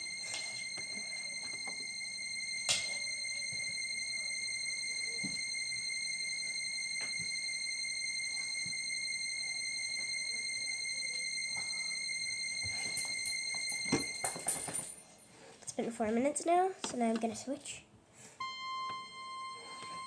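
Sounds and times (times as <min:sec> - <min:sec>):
high-pitched electronic tone: 0:18.4 - 0:20.0.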